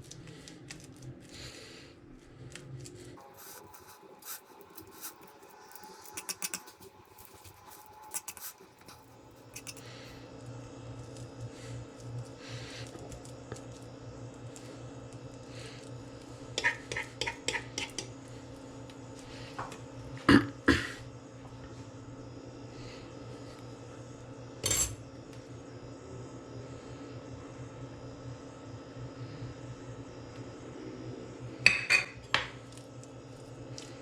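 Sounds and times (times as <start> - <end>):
faint steady hum: 0.0 - 34.0
utensils clinking against dishes: 3.6 - 9.8, 24.6 - 25.0.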